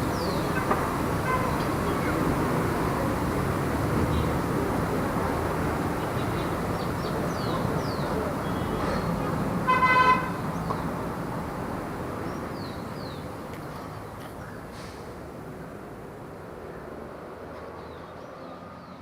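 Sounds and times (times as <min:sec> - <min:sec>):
city traffic passing: 0:00.0 - 0:19.0
car horn toot: 0:09.7 - 0:10.4.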